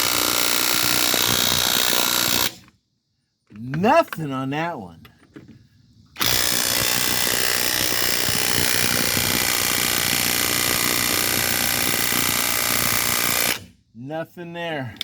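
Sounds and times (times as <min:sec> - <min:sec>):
impact wrench hammering: 0:06.2 - 0:13.6.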